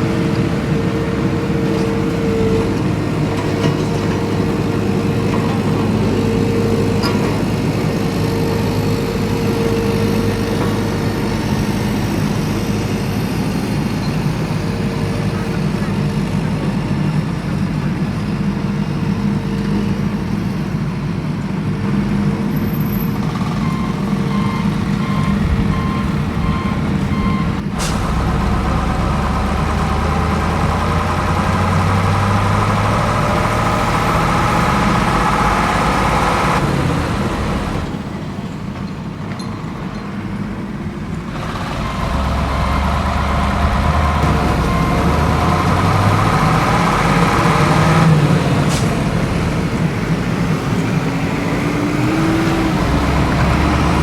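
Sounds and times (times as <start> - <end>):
vehicle engine running: 21.3 - 51.2.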